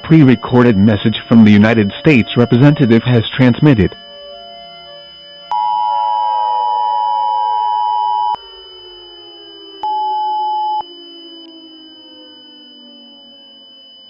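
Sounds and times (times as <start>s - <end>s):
single tone: 5.5s - 8.4s, 9.8s - 13.8s
two-tone attention signal: 5.5s - 8.4s, 9.3s - 14.0s.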